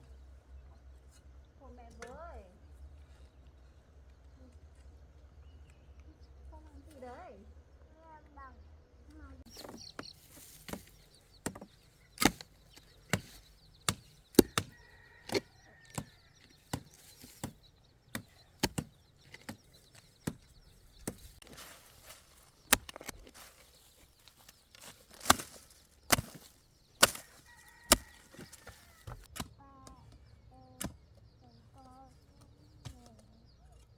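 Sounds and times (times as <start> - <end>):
chopping strikes: 10.6 - 19.6, 25.1 - 29.6.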